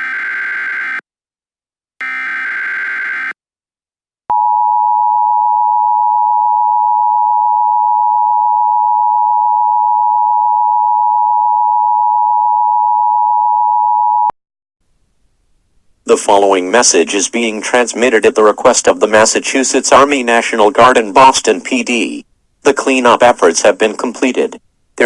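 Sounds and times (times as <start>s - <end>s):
buzzy digital data tones: 0.0s - 1.0s, 2.0s - 3.4s.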